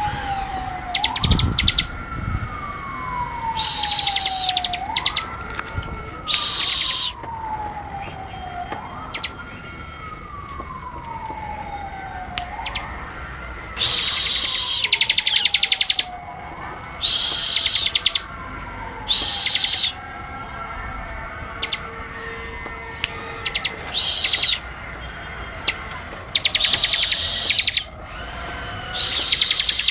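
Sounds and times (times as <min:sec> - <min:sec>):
faint siren-like tone: 0:00.0 - 0:29.9
buzzy bird song with clicking trills: 0:00.9 - 0:01.9, 0:03.7 - 0:05.3, 0:09.1 - 0:09.3, 0:14.3 - 0:16.1, 0:17.5 - 0:18.2, 0:23.0 - 0:24.6, 0:25.6 - 0:27.9, 0:29.0 - 0:29.9.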